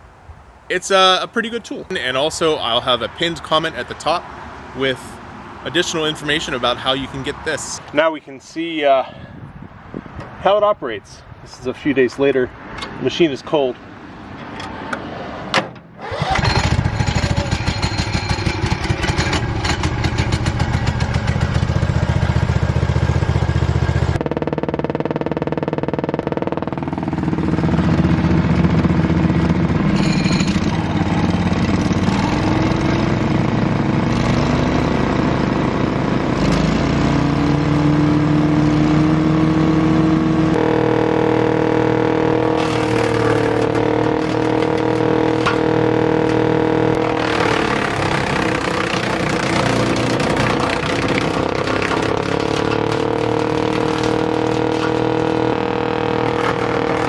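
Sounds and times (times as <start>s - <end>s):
rough noisy clatter: 15.6s - 35.6s, 42.3s - 57.0s
wood chipper engine running: 16.0s - 57.0s.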